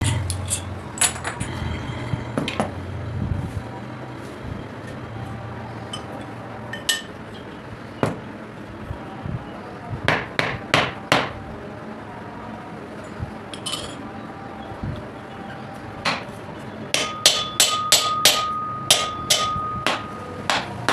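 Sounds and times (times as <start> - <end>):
hammer knocking on metal: 10.1 - 11.4, 17.0 - 20.9.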